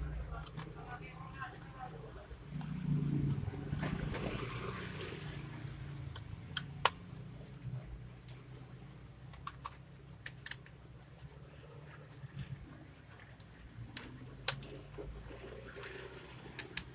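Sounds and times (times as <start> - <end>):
steady low hum: 0.0 - 16.9
plastic and metal parts clicking: 9.3 - 10.8.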